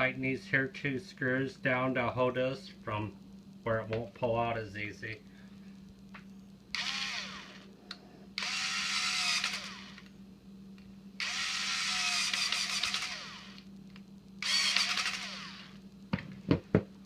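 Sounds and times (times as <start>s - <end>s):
cordless screwdriver motor: 6.7s - 7.7s, 8.4s - 10.1s, 11.2s - 13.6s, 14.4s - 15.8s.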